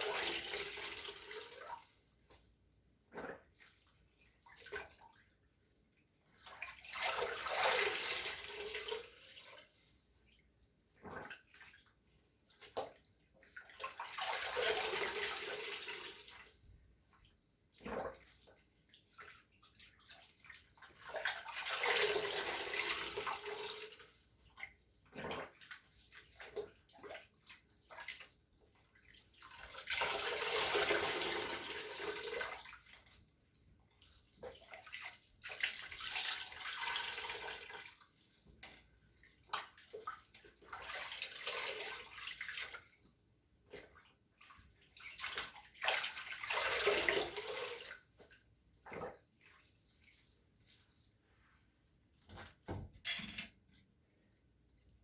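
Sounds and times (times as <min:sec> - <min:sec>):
water pouring and splashing: 0:06.2 - 0:52.8.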